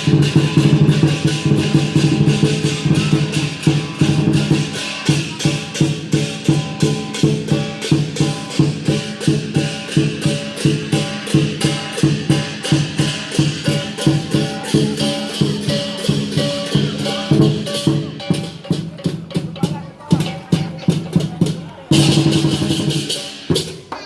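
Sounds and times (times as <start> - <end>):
cymbals crashing: 0.0 - 24.0
drum beating: 0.0 - 24.0.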